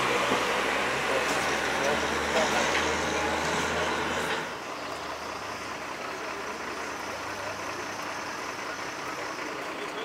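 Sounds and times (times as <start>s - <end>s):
truck engine running: 0.0s - 10.0s.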